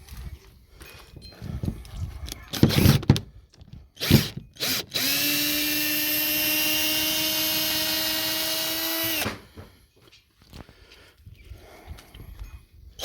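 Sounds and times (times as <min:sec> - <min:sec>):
power drill running: 0:04.0 - 0:09.6.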